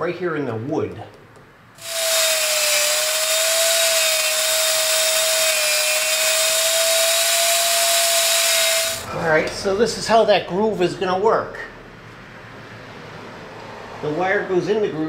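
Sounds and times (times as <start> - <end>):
power tool cutting wood: 1.8 - 9.1.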